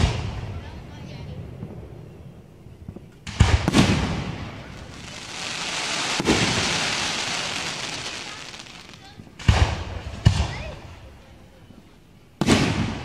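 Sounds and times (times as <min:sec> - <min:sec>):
fireworks bangs: 0:02.9 - 0:10.8, 0:12.4 - 0:13.0
fireworks crackling: 0:02.9 - 0:11.2.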